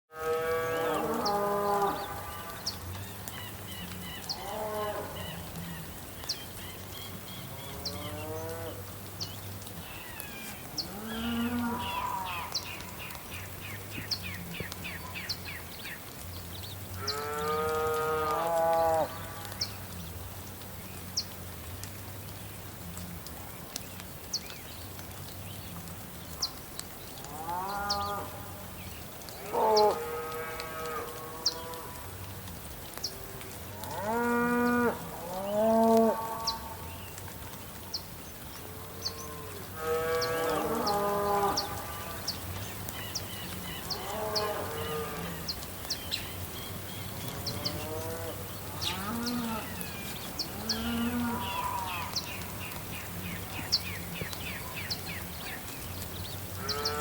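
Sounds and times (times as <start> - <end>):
soft hiss of rain: 0.1 - 57.0
birds twittering: 37.9 - 57.0.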